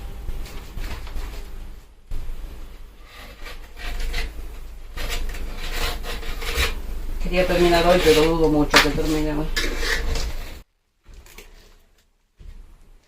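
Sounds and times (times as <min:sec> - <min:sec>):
sealant being scraped off: 0:03.0 - 0:10.6.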